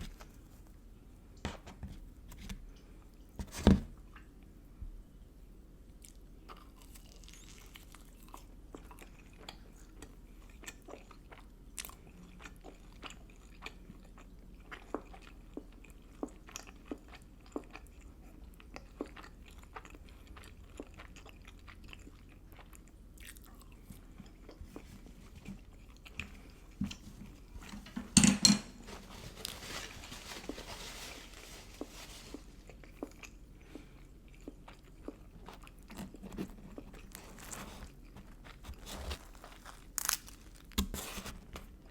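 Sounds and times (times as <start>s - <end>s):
chewing and biting food: 6.0s - 27.5s, 32.4s - 40.8s.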